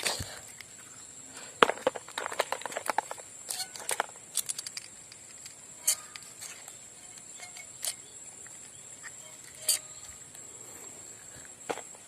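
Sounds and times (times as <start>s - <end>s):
high insect drone: 0.0s - 12.0s
fishing tackle clicks and rattles: 2.2s - 10.3s.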